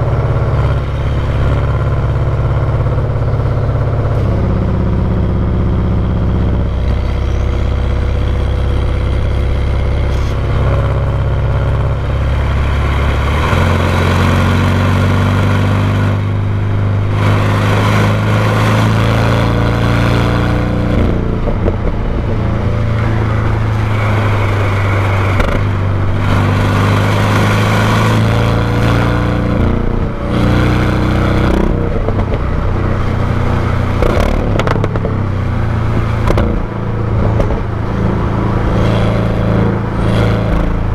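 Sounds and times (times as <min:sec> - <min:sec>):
loud car exhaust: 0:00.0 - 0:40.9.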